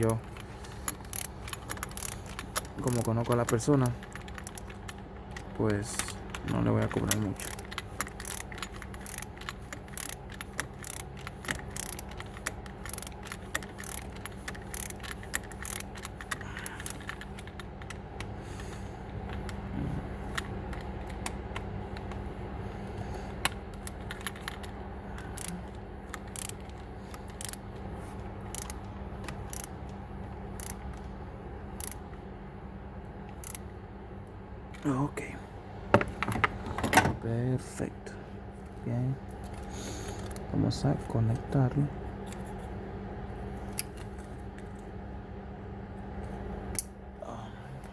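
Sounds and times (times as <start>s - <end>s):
steady low hum: 0.0s - 47.9s
metallic clicks of hand tools: 0.9s - 4.8s, 5.7s - 18.0s, 25.2s - 26.6s, 28.6s - 28.8s, 30.6s - 30.8s, 31.8s - 32.0s.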